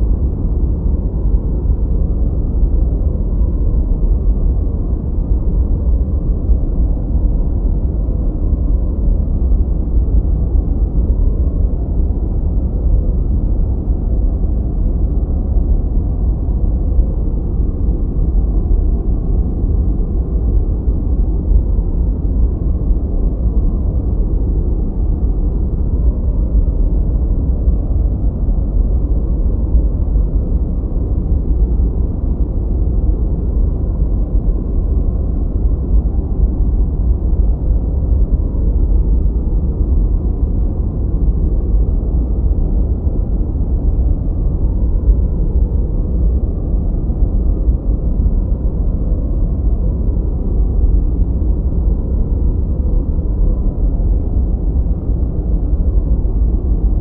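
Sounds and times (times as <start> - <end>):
deep muffled white noise: 0.0 - 57.0.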